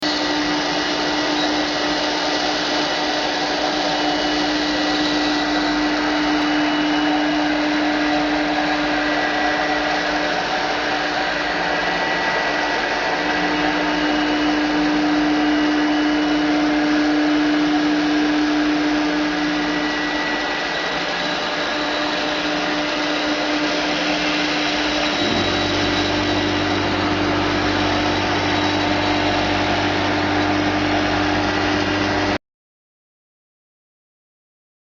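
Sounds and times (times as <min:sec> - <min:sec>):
router spindle cutting metal: 0:00.0 - 0:32.4
deeper hum: 0:19.0 - 0:32.4.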